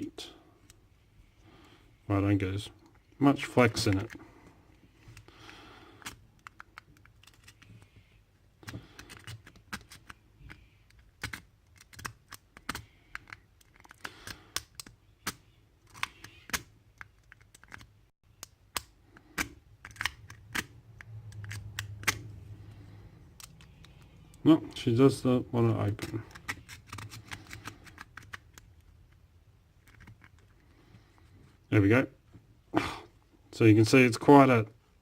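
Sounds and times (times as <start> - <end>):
lock pick clicking and scraping: 8.6 - 22.3, 29.8 - 30.6.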